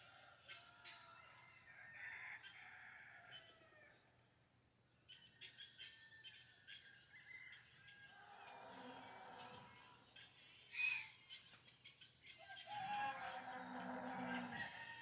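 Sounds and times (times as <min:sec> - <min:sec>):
small birds chirping: 0:07.9 - 0:14.5
rooster crowing: 0:12.5 - 0:15.0.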